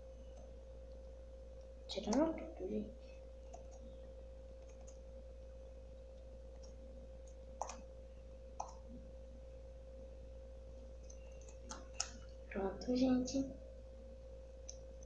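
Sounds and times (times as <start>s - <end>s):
faint steady hum: 0.0s - 15.0s
sticky clicks of slime: 11.1s - 12.3s.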